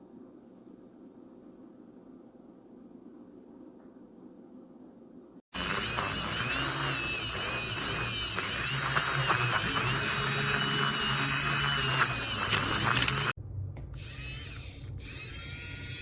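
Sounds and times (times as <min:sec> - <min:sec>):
milk frother motor whirring: 0:05.5 - 0:13.4, 0:14.0 - 0:16.0.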